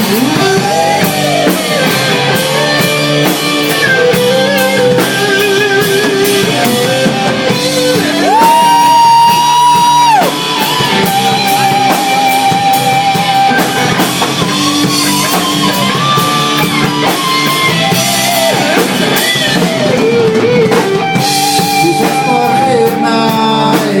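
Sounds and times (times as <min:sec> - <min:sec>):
person singing: 0:00.0 - 0:13.4, 0:19.9 - 0:24.0
live rock band playing: 0:00.0 - 0:24.0.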